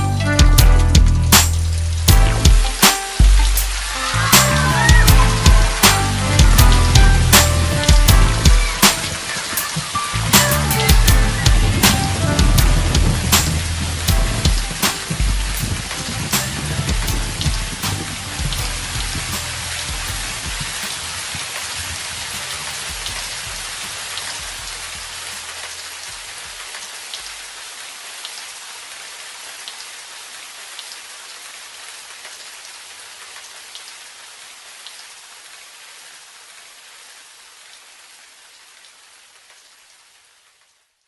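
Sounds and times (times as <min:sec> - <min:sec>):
low bass notes: 0:00.0 - 0:08.9, 0:10.2 - 0:20.8
steady rain falling: 0:00.0 - 0:41.0.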